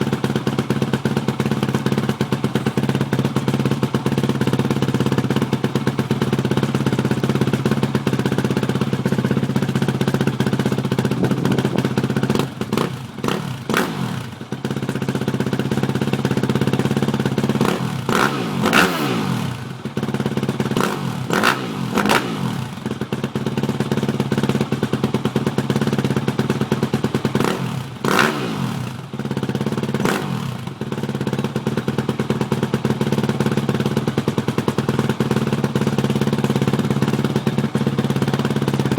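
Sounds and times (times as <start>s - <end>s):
motorcycle engine idling and revving: 0.0s - 38.9s.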